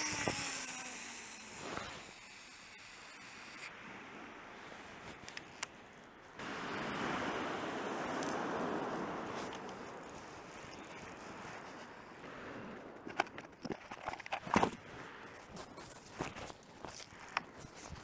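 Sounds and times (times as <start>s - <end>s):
sea surf washing on beach: 3.7s - 13.0s.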